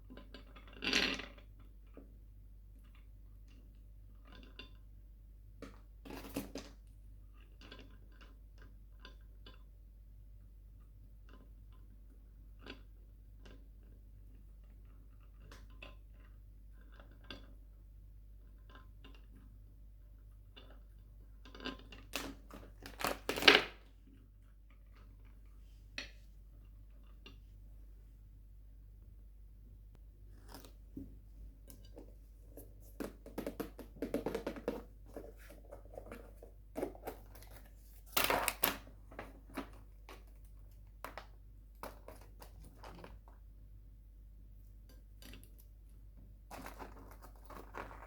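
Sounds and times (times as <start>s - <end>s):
wrapper crackling: 22.2s - 23.7s
sweets clicking and tapping: 30.4s - 43.4s.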